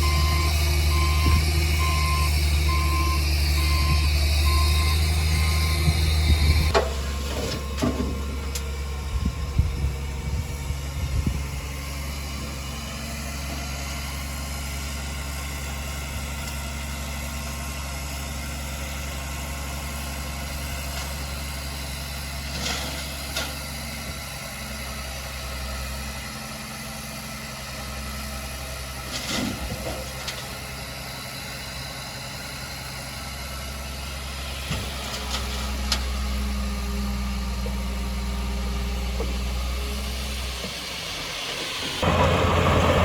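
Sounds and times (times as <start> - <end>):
diesel engine idling: 0.0 - 43.0.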